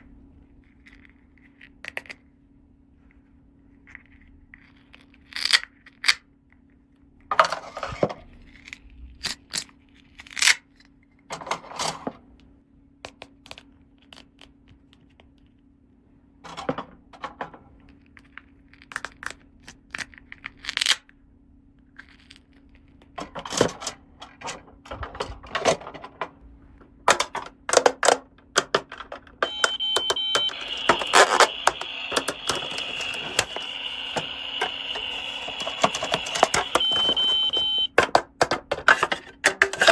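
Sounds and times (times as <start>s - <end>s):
packaging rustling: 23.3s - 39.9s
plastic toy pieces clicking: 27.1s - 33.4s
steady high tone: 29.1s - 38.0s.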